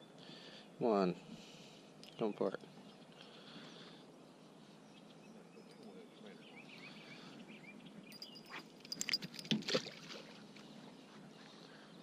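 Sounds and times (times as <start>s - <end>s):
faint bird chirps: 2.1s - 9.1s.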